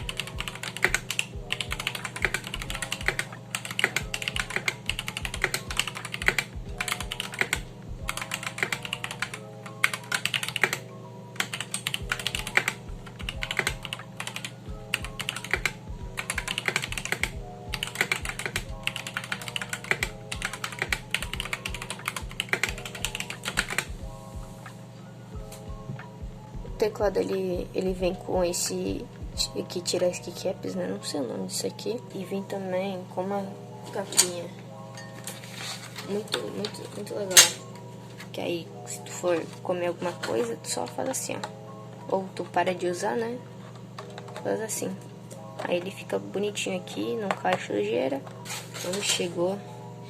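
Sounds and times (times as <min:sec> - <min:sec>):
mechanical keyboard typing: 0:00.0 - 0:10.8, 0:11.4 - 0:23.9.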